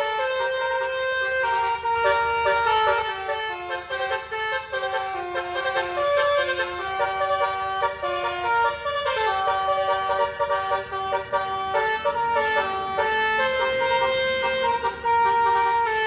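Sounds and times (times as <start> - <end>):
musical air horns: 0.0 - 16.0.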